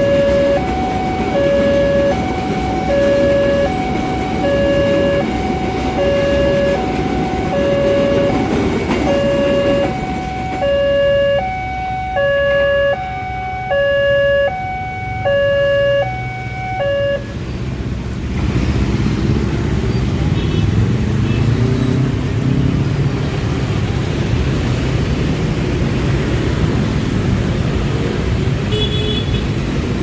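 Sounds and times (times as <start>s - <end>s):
two-tone crossing alarm: 0.0s - 17.4s.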